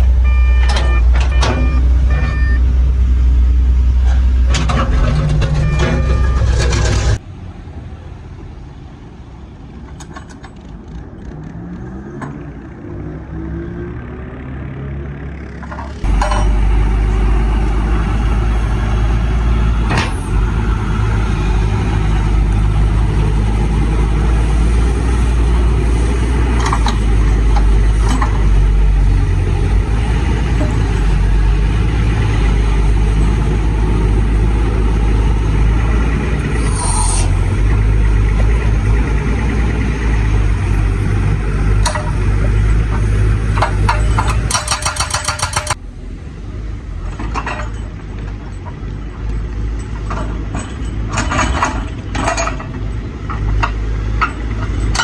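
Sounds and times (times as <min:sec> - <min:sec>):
excavator diesel engine running: 0:00.0 - 0:12.9, 0:13.8 - 0:55.0
hydraulic breaker hammering rock: 0:43.6 - 0:45.8.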